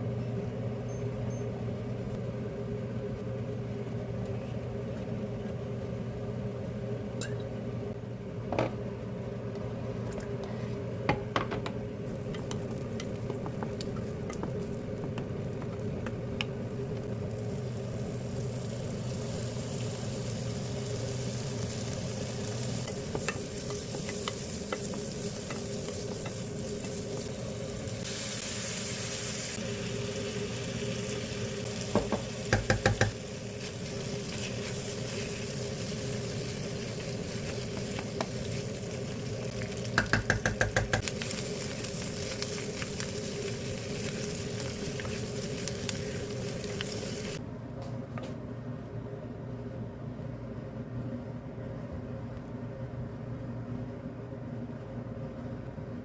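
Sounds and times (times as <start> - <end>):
food sizzling in a pan: 12.1 - 47.4
cooking utensil taps: 31.9 - 33.2, 40.0 - 41.0.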